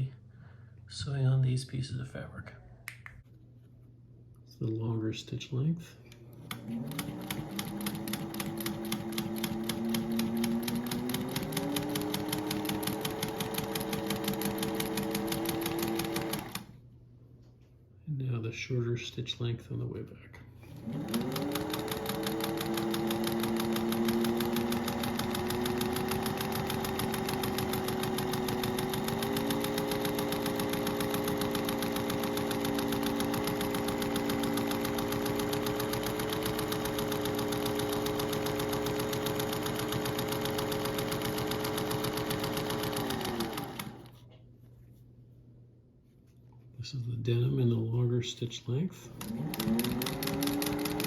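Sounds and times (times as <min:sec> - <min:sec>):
sewing machine sewing: 0:06.3 - 0:16.8, 0:20.6 - 0:44.2, 0:49.1 - 0:51.0.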